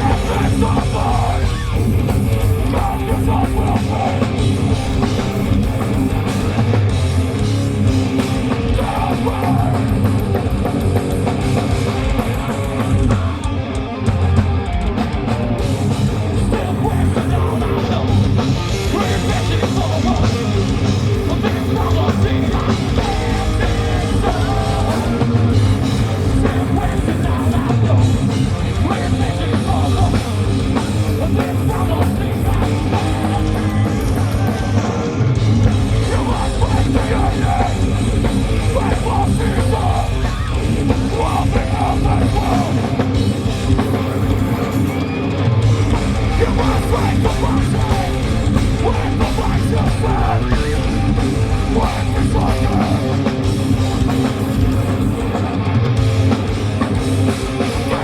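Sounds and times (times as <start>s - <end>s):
person yelling and singing: 0.0s - 1.8s, 2.6s - 4.8s, 8.4s - 10.0s, 16.2s - 35.1s, 35.8s - 43.2s, 46.2s - 53.5s
heavy metal band playing live: 0.0s - 58.0s.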